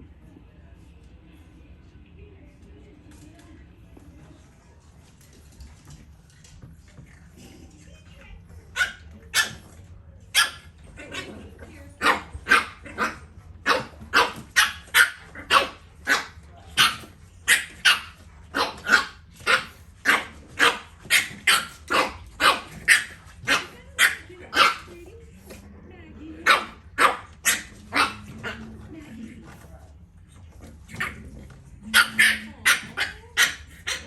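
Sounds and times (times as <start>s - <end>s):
puppies barking: 12.0s - 24.9s, 26.4s - 28.7s, 31.8s - 34.0s.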